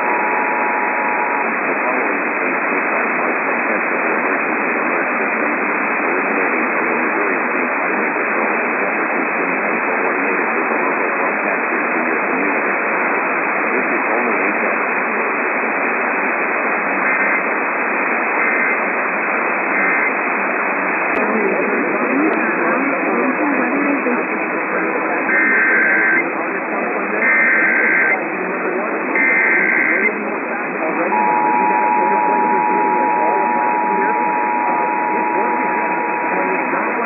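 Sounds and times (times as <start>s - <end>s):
two-tone data bursts: 0.0s - 2.6s, 19.6s - 20.3s, 25.2s - 26.4s, 27.2s - 28.2s, 29.1s - 30.2s, 30.8s - 37.0s
radio static: 0.0s - 37.0s.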